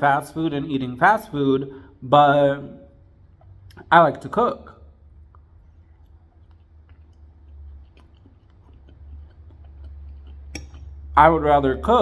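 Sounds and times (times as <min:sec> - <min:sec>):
steady low hum: 0:00.0 - 0:12.0
person chewing food: 0:02.9 - 0:03.9, 0:04.7 - 0:12.0
mouth clicks: 0:05.2 - 0:11.3.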